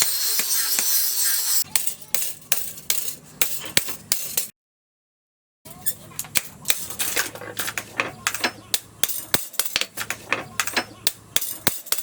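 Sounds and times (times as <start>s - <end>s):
metal tools tapping on metal: 1.6s - 4.5s, 5.8s - 12.0s.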